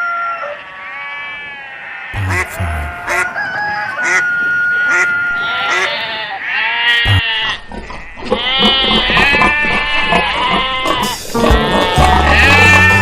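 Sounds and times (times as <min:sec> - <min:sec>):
sheep or goat bleating: 0:00.8 - 0:03.3, 0:04.9 - 0:13.0
music with low bass: 0:11.4 - 0:13.0.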